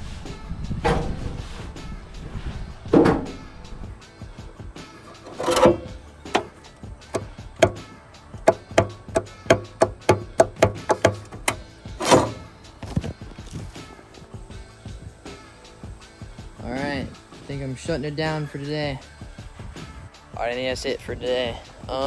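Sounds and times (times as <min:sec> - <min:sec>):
background music: 0:00.0 - 0:22.0
sharp knocks: 0:05.0 - 0:07.8, 0:08.5 - 0:13.1
heavy thuds: 0:05.0 - 0:13.9.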